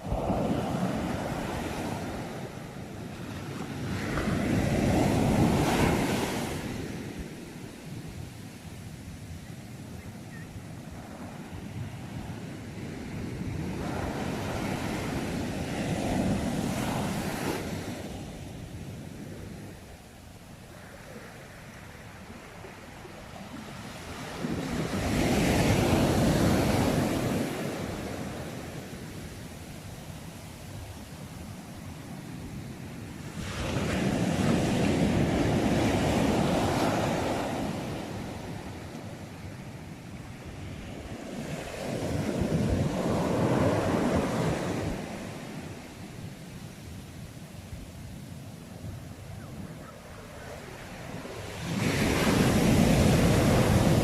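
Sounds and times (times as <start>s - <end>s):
sea waves washing ashore: 0.0s - 54.0s.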